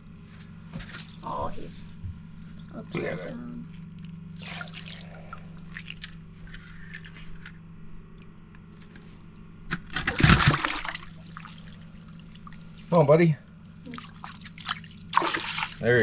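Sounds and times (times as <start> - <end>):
steady low hum: 0.0 - 16.0
water sloshing and dripping: 0.1 - 3.0, 3.7 - 13.0, 13.6 - 16.0
fish splash: 4.4 - 6.2, 9.9 - 12.8, 13.9 - 15.8.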